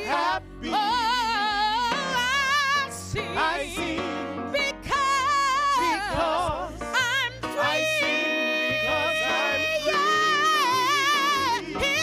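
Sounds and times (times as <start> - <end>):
person singing gospel: 0.0 - 12.0.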